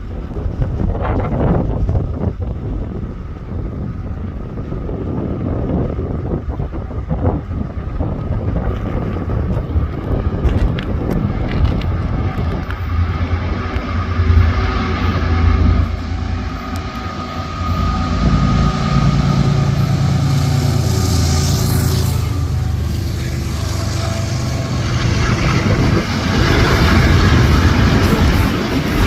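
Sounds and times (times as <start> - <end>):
diesel locomotives running: 0.0 - 29.0
train wheel and rail noise: 0.0 - 29.0.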